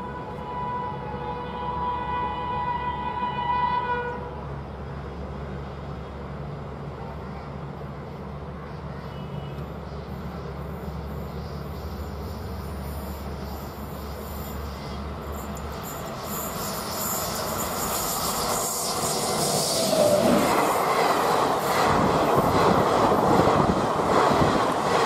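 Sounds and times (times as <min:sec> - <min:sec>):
locomotive horn blaring: 0:00.0 - 0:04.4
train rumbling: 0:00.0 - 0:25.0.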